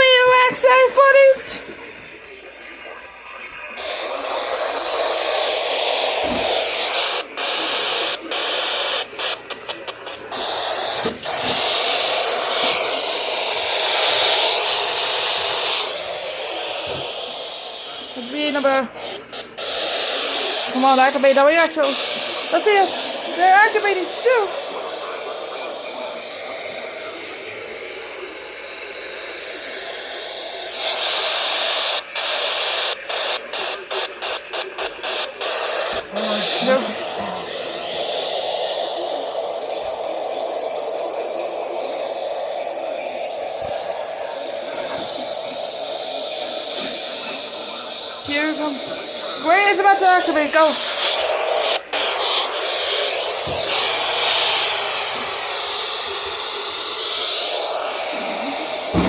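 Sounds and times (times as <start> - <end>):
radio static hiss: 0.0 - 59.0.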